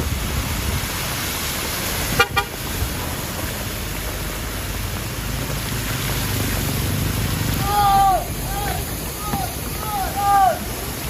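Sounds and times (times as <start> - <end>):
heavy rain hissing: 0.0 - 11.0
vehicle horn toot: 2.2 - 2.6.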